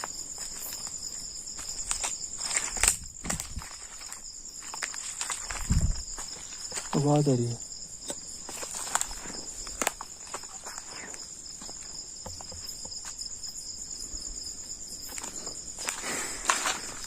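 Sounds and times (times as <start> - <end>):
crickets chirring: 0.0 - 17.0
clicks and rustles: 1.8 - 7.0.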